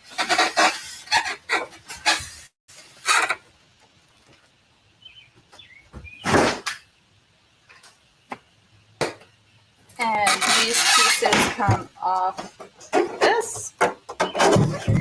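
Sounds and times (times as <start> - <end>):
packaging rubbing and scraping: 0.0 - 3.4, 10.2 - 11.6.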